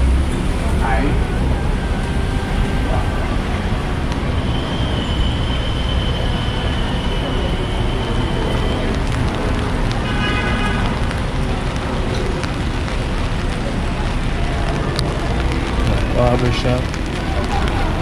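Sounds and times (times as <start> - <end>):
hum of passing vehicles: 0.0 - 18.0
thin high whine: 0.1 - 14.5
short horn toot: 0.4 - 13.3.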